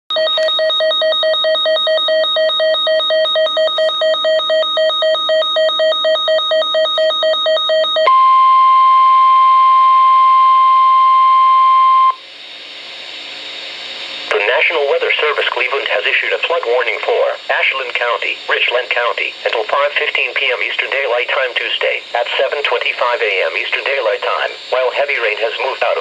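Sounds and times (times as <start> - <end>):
steady weather alarm tone: 0.1 - 12.2
low radio hiss: 12.3 - 26.0.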